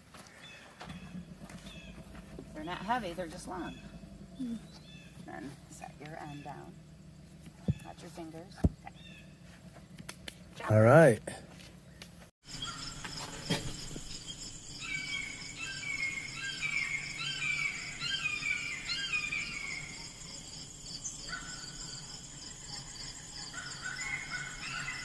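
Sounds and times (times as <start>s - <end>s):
insects buzzing: 0.0s - 11.1s, 12.4s - 25.0s.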